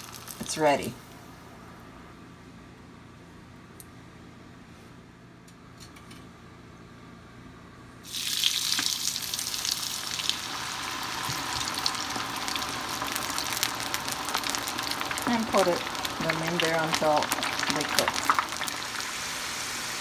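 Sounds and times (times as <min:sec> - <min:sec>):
fries sizzling in hot oil: 0:00.0 - 0:00.9, 0:08.0 - 0:20.0.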